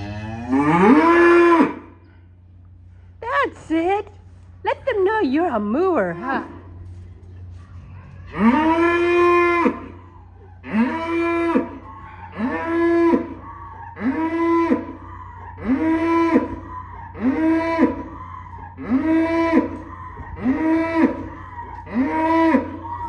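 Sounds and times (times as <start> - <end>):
cow mooing: 0.0 - 1.9, 8.3 - 23.0.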